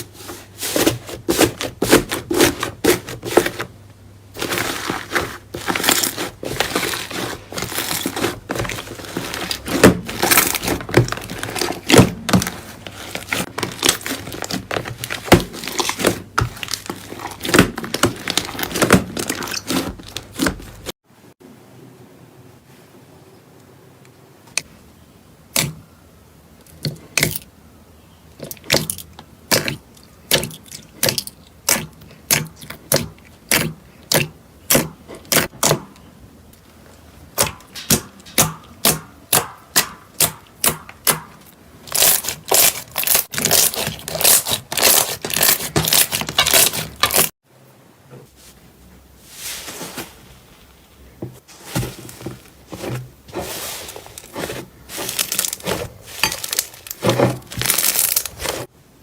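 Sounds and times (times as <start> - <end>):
slime crackling and popping: 41.9 - 47.3.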